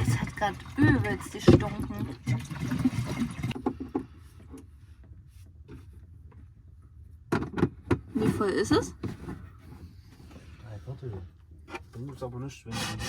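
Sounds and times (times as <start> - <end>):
fuel pouring into tank: 0.0 - 3.9.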